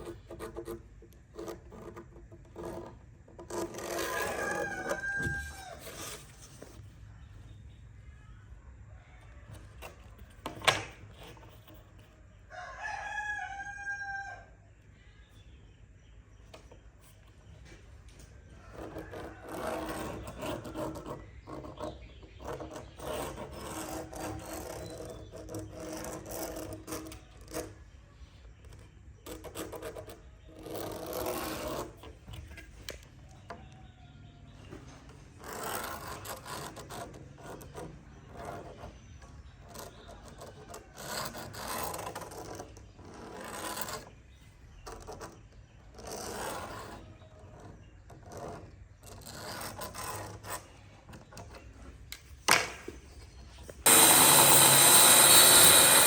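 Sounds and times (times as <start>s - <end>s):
rasping strokes on wood: 18.7s - 27.7s, 53.8s - 56.0s.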